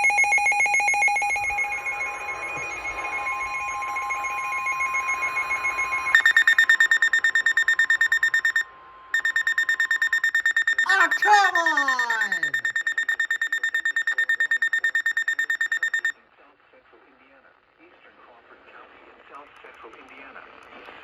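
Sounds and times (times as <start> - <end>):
high-pitched rapid beeping: 0.0 - 8.6, 9.2 - 16.1
rapid electronic beeping: 0.0 - 16.1
steady warning tone: 0.0 - 16.1.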